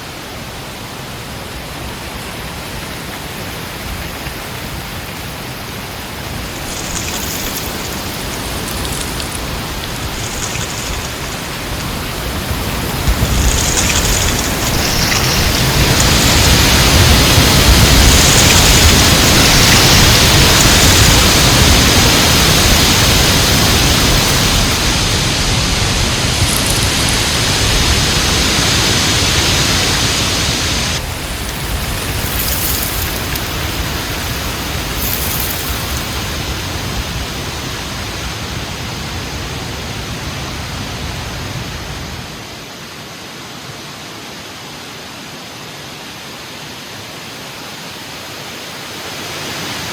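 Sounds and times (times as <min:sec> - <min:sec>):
heavy wind roaring: 0:02.6 - 0:42.5.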